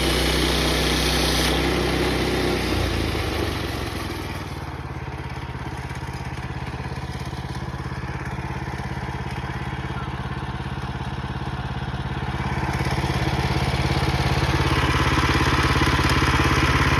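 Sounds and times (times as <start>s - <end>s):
small gas engine running: 0.0s - 16.9s.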